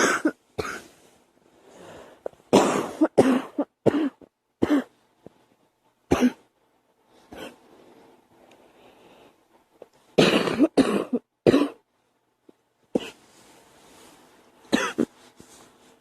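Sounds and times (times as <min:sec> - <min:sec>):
girl coughing: 0:00.0 - 0:00.9, 0:02.5 - 0:04.9, 0:06.1 - 0:06.4, 0:07.3 - 0:07.6, 0:10.2 - 0:11.8, 0:13.0 - 0:13.2, 0:14.7 - 0:15.1.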